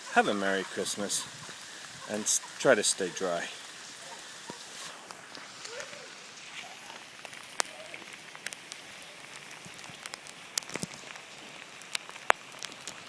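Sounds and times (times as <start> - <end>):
heavy rain falling: 0.0 - 13.0
sharp taps of raindrops: 4.0 - 13.0.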